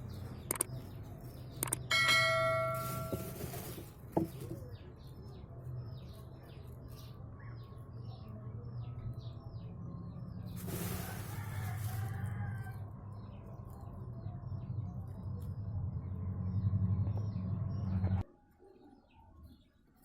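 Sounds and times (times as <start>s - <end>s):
small birds chirping: 0.0s - 1.9s, 3.6s - 20.0s
bell ringing: 1.9s - 3.3s.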